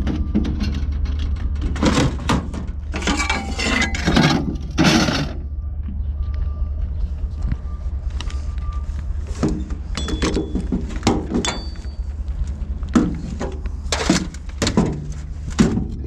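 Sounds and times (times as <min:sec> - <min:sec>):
sharp clanks and knocks: 0:00.0 - 0:06.0, 0:09.3 - 0:16.0
vehicle engine idling: 0:04.6 - 0:16.0.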